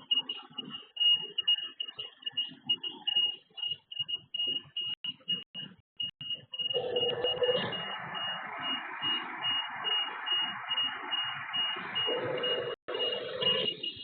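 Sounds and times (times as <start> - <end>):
electronic alarm buzzer beeping: 0.0 - 14.0.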